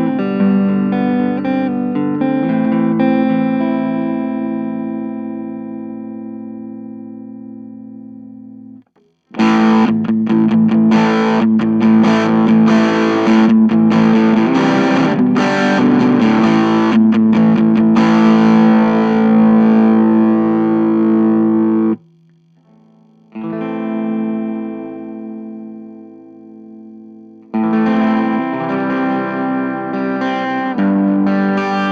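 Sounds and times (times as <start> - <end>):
distorted electric guitar chords: 0.0 - 22.0, 22.6 - 31.9
clean guitar chord ringing: 9.4 - 22.0, 22.6 - 31.9.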